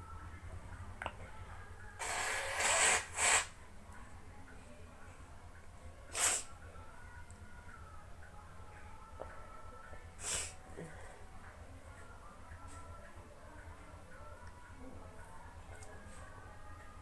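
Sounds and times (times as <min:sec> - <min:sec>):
dog sneezing: 0:02.0 - 0:03.5, 0:06.1 - 0:06.5.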